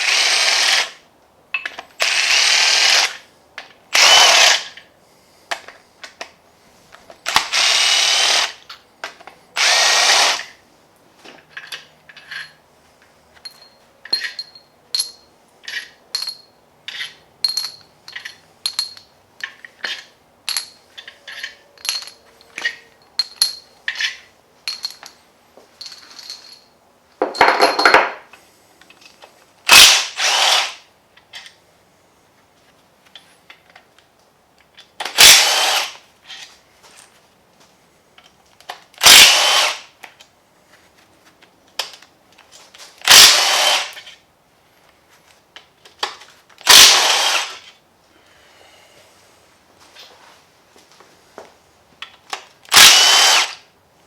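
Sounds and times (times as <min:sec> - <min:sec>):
handheld power tool running: 0:00.0 - 0:01.0, 0:02.0 - 0:03.2, 0:03.9 - 0:04.8, 0:07.3 - 0:08.6, 0:09.6 - 0:10.6, 0:29.7 - 0:30.9, 0:35.1 - 0:36.0, 0:39.0 - 0:39.9, 0:43.0 - 0:44.1, 0:46.6 - 0:47.7, 0:52.7 - 0:53.7.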